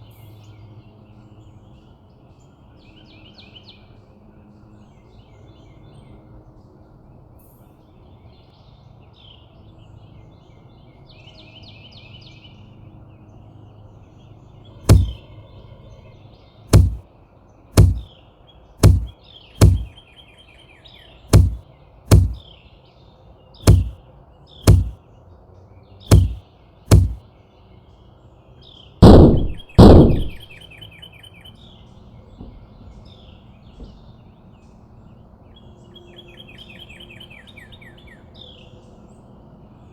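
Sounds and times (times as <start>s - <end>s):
bird beak knocking on plastic: 14.9s - 15.2s, 16.7s - 17.0s, 17.8s - 18.0s, 18.8s - 19.9s, 21.3s - 22.4s, 23.7s - 23.9s, 24.7s - 25.0s, 26.1s - 27.2s, 29.0s - 30.4s
heavy thumps: 14.9s - 15.2s, 16.7s - 17.0s, 17.8s - 18.0s, 18.8s - 19.9s, 21.3s - 22.4s, 23.6s - 24.0s, 24.7s - 25.0s, 26.1s - 27.2s, 29.0s - 30.5s
small birds chirping: 14.9s - 15.2s, 17.8s - 18.1s, 18.8s - 20.1s, 21.3s - 22.5s, 23.6s - 24.0s, 24.6s - 25.0s, 26.1s - 27.2s.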